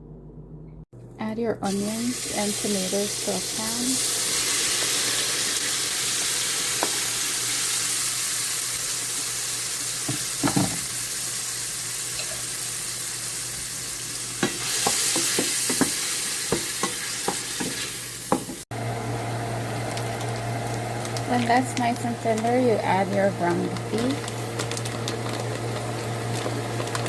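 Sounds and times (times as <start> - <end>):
onion and tomato sizzling in pan: 1.6 - 27.0.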